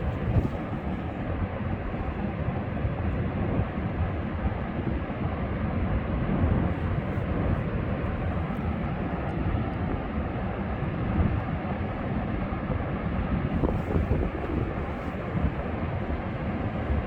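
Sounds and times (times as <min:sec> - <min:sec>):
wind: 0:00.0 - 0:17.0.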